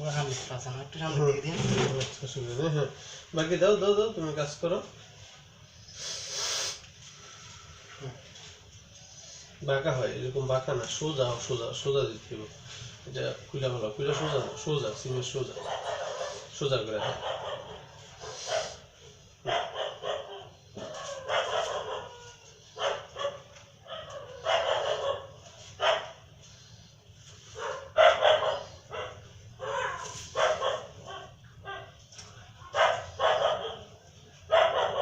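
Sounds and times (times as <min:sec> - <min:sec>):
dog barking: 0:15.6 - 0:18.8, 0:19.4 - 0:26.3, 0:27.6 - 0:32.0, 0:32.6 - 0:35.0.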